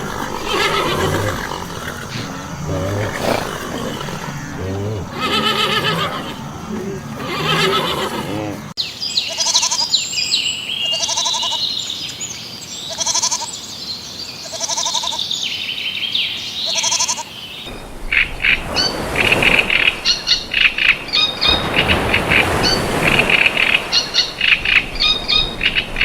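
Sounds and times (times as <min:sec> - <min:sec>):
animal bleating call: 0:00.0 - 0:08.7.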